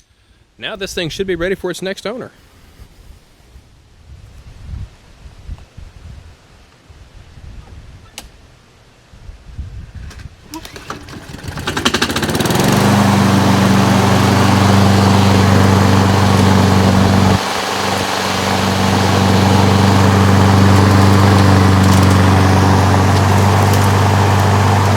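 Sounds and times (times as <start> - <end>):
lawn mower engine running: 10.5 - 24.9.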